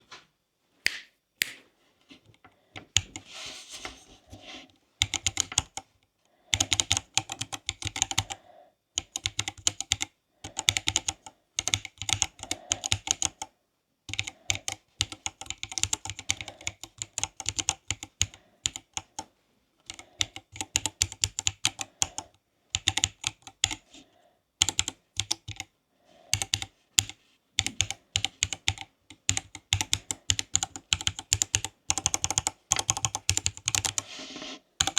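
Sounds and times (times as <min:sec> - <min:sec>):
mechanical keyboard typing: 0:05.0 - 0:05.9, 0:06.5 - 0:08.4, 0:09.0 - 0:13.5, 0:14.1 - 0:19.3, 0:19.9 - 0:23.8, 0:24.6 - 0:25.7, 0:26.3 - 0:34.1.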